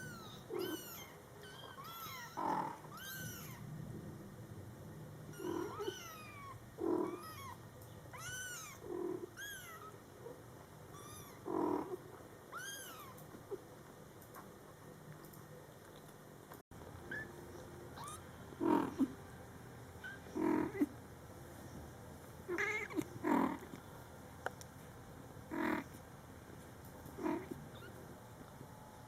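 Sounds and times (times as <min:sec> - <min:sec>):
kittens mewing: 0:00.0 - 0:03.6, 0:05.3 - 0:07.6, 0:08.2 - 0:10.0, 0:27.2 - 0:28.0
cat purring: 0:05.1 - 0:07.6, 0:08.5 - 0:10.4, 0:11.1 - 0:12.2, 0:18.6 - 0:19.2, 0:20.1 - 0:21.0, 0:27.1 - 0:27.9
mother cat calling: 0:05.3 - 0:07.6.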